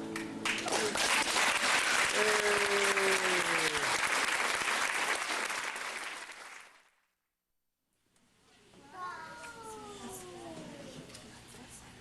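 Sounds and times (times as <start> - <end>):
audience applauding: 0.2 - 6.9.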